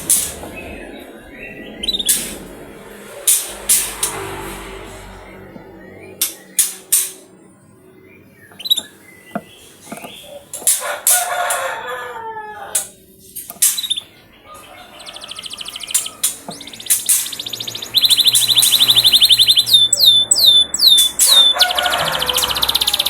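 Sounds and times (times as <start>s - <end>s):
canary rapid high trill: 0.0s - 7.2s, 13.8s - 23.0s
canary clicks: 12.8s - 14.1s
canary falling call: 13.6s - 23.0s.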